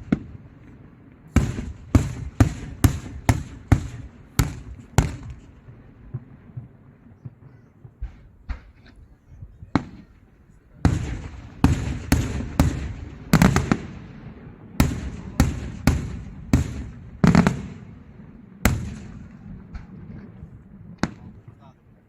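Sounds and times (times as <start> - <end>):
fireworks bangs echoing: 0.0 - 21.8
small firework pops: 4.4 - 10.2.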